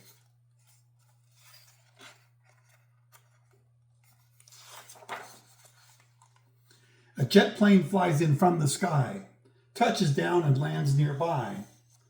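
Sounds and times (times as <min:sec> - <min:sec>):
page turning rustle: 0:00.0 - 0:06.5
steady low hum: 0:06.8 - 0:11.8.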